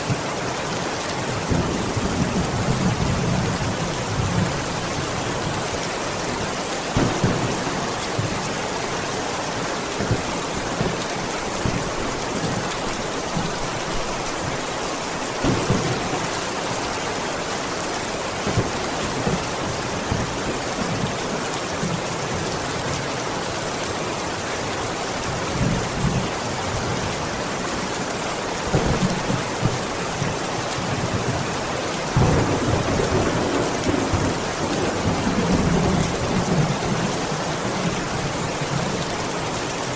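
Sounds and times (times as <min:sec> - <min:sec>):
heavy rain falling: 0:00.0 - 0:39.9
thunder rumbles: 0:01.2 - 0:14.6, 0:15.3 - 0:21.2, 0:28.7 - 0:39.0.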